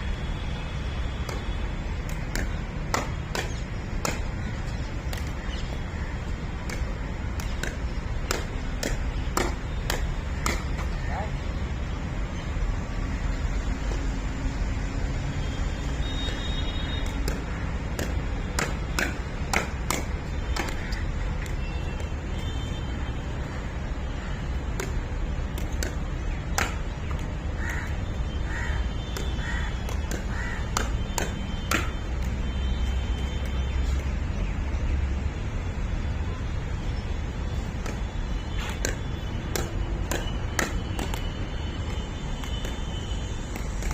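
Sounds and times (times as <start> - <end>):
paddles popping a ball: 1.2 - 5.8, 6.5 - 11.0, 17.0 - 22.2, 29.1 - 32.3, 37.7 - 42.9.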